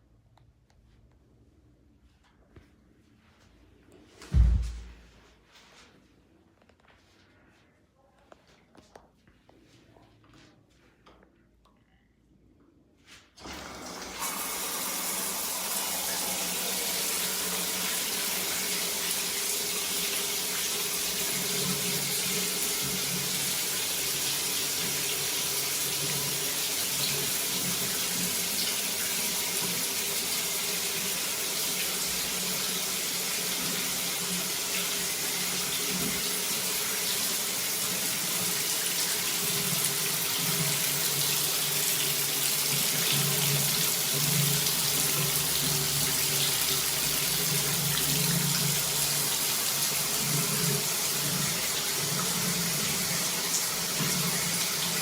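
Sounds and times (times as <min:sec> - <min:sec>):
shower water pouring: 0:13.4 - 0:55.0.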